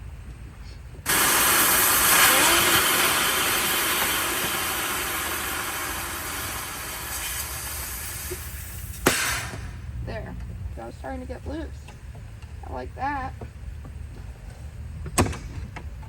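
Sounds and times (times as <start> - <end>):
compressed air hissing: 1.0 - 9.8.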